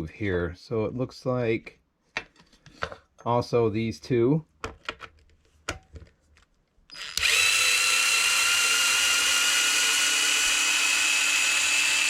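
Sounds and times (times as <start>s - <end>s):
power screwdriver running: 6.9s - 12.0s.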